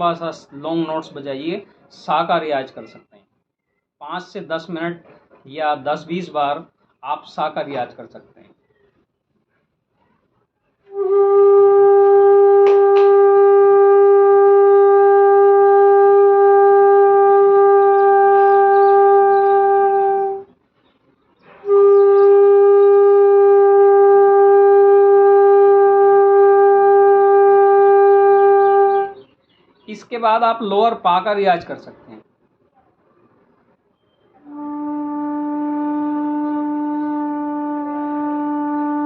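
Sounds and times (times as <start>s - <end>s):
bamboo flute long note: 10.9s - 20.5s, 21.5s - 29.2s, 34.3s - 39.0s.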